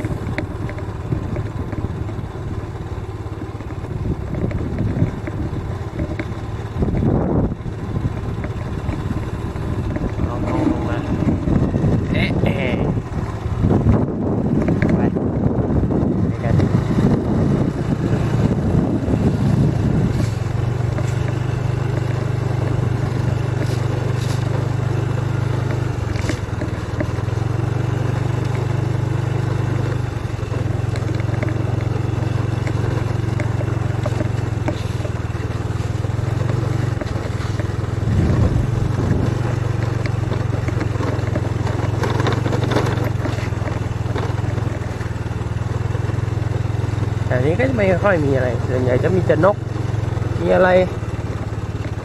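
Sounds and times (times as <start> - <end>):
small motorcycle engine running: 0.0 - 52.0
wind on microphone: 6.8 - 20.9, 37.9 - 40.3.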